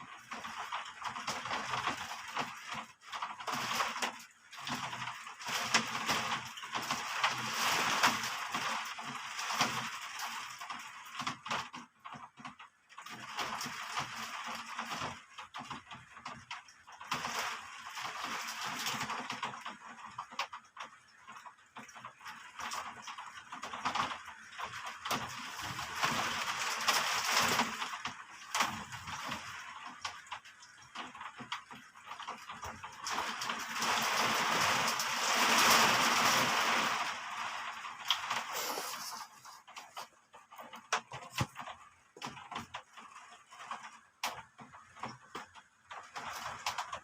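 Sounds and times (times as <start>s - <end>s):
heavy rain in wind: 0.0s - 11.8s, 22.2s - 47.0s
rain drips and splashes: 0.0s - 47.0s.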